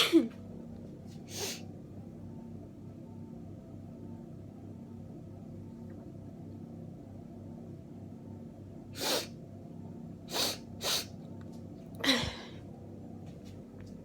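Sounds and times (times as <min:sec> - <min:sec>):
person sneezing: 0:00.0 - 0:00.3.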